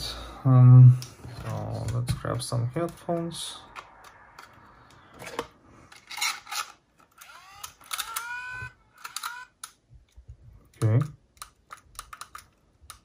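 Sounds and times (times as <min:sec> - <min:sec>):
plastic clicks and rattling: 0:05.2 - 0:13.0.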